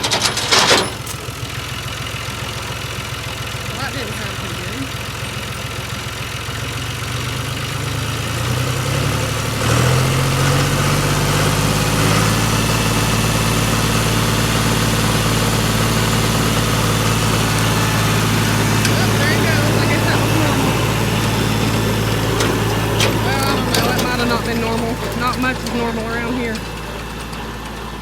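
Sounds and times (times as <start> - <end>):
tractor diesel engine idling and revving: 0.0 - 28.0.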